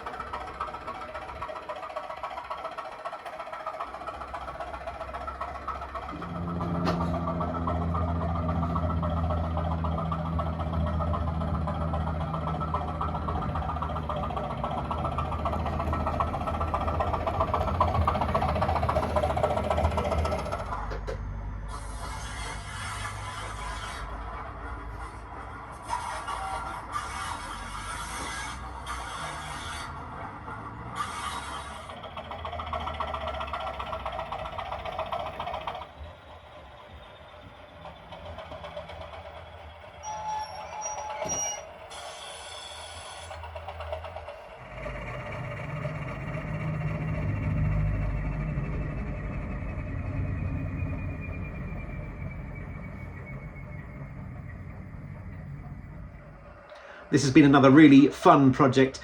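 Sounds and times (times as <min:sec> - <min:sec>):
rattling clatter: 0:00.0 - 0:58.0
model train diesel engine drone: 0:00.0 - 0:59.0.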